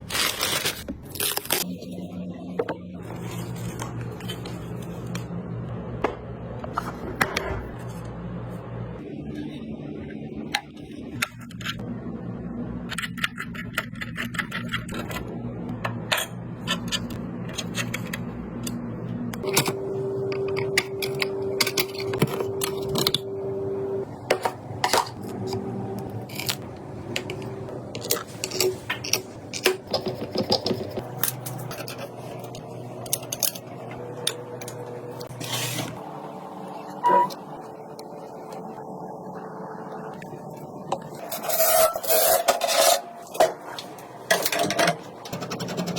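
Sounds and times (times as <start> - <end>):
steady motor whine: 1.6 - 13.4, 14.6 - 41.6
plastic parts clicking and scraping: 12.9 - 15.2, 24.3 - 36.0.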